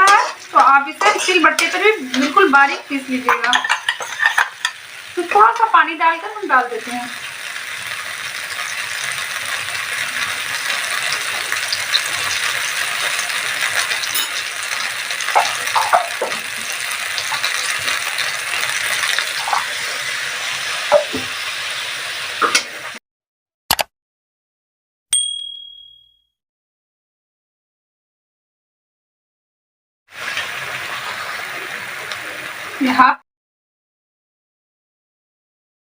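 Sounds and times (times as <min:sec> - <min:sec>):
paste sizzling in hot oil: 0:00.0 - 0:23.0, 0:30.1 - 0:33.1
click: 0:23.7 - 0:23.9
metallic ding: 0:25.1 - 0:26.3.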